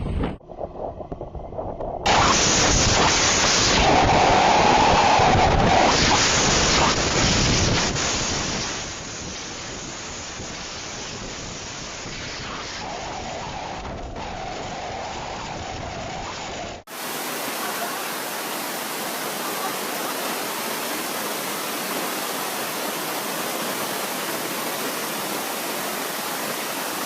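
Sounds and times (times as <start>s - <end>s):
heavy low rumble: 0.0s - 3.3s
rush of wind and water: 0.0s - 27.0s
hissing rush of rain: 2.1s - 27.0s.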